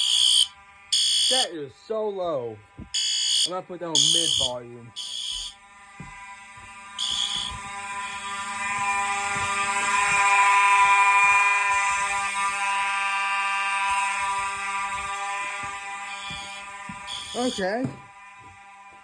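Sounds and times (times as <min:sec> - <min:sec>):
fire alarm horn: 0:00.0 - 0:01.6, 0:02.2 - 0:19.0
high-pitched burst: 0:03.0 - 0:05.6, 0:07.0 - 0:09.4, 0:16.0 - 0:18.0.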